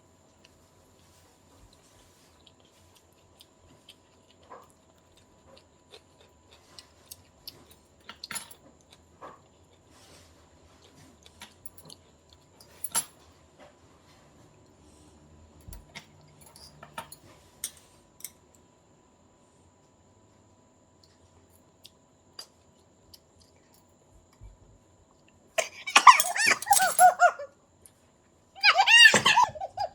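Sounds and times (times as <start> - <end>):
soft chewing: 0.1 - 16.4, 20.5 - 25.9.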